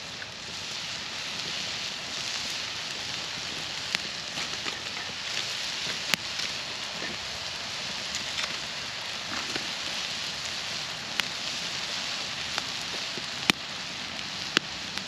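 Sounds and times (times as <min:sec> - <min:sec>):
campfire crackling and popping: 0:00.0 - 0:15.0
meat sizzling on a grill: 0:00.0 - 0:15.0.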